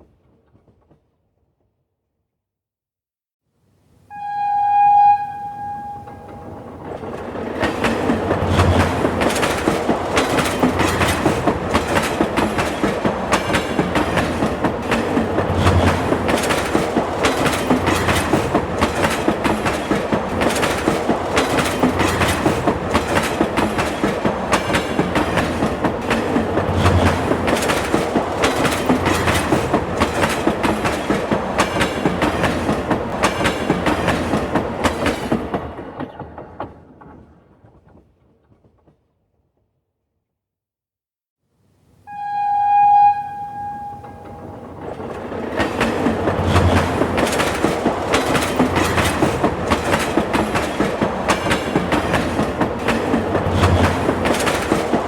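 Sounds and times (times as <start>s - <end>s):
train horn: 4.1s - 6.8s, 42.1s - 44.8s
train wheels clacking on rails: 5.6s - 39.0s, 43.3s - 55.0s.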